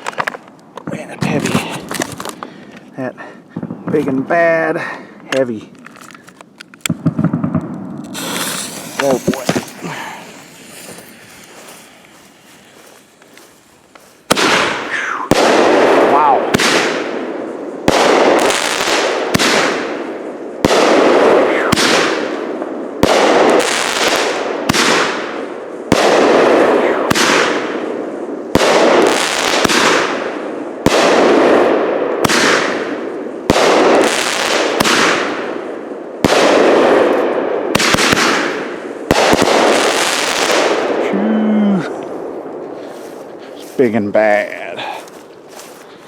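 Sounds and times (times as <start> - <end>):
firework shots banging and hissing: 6.8 - 41.0.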